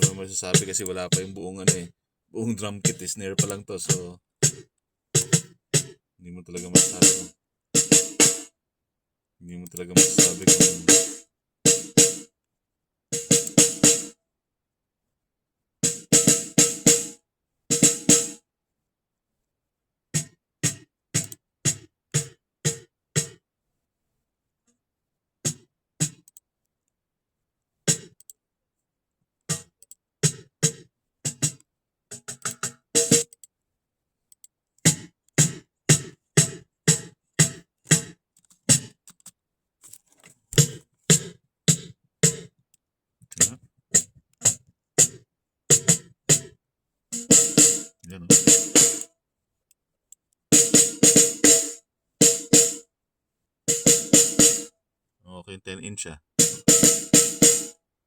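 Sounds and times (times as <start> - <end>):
snare drum hits: 6.7 - 8.5, 10.0 - 12.2, 47.2 - 49.0, 50.6 - 52.8, 53.7 - 54.7, 56.4 - 57.7.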